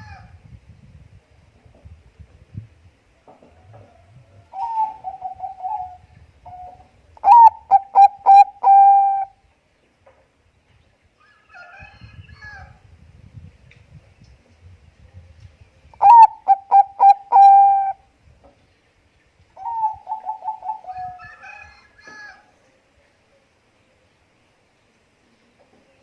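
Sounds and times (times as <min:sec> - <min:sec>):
dove cooing: 0:03.6 - 0:09.4, 0:16.0 - 0:18.0, 0:19.6 - 0:21.3.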